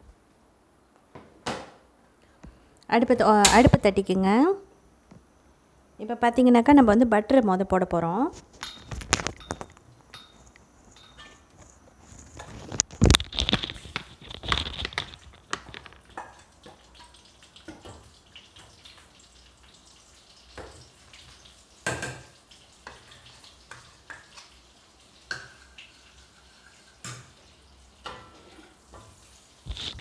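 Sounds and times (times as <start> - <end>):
butter sizzling in a pan: 10.0 - 30.0.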